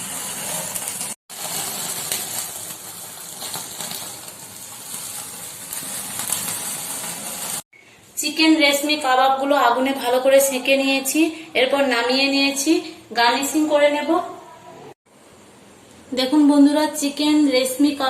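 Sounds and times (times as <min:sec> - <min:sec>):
meat sizzling over flame: 0:00.0 - 0:07.7.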